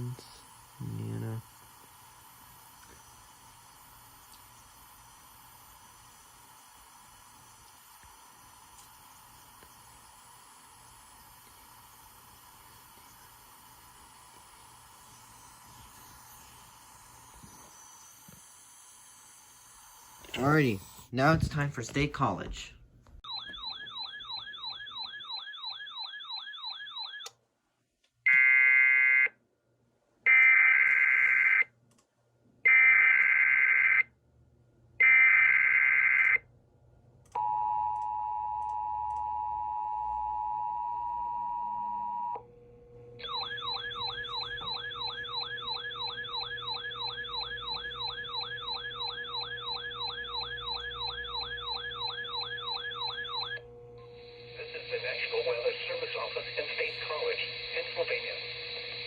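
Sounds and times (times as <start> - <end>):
steady hum: 0.0 - 23.2, 41.0 - 59.0.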